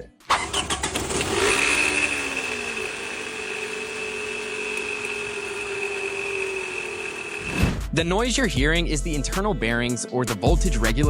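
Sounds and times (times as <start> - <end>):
car alternator whining: 0.3 - 7.6.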